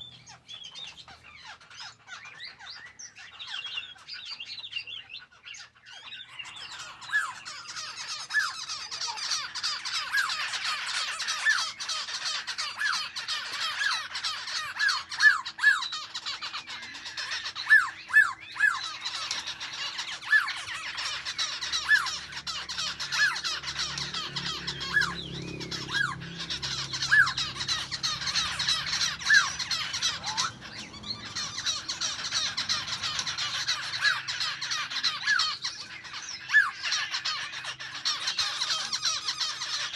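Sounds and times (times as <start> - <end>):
songbirds chattering: 0.0 - 39.9.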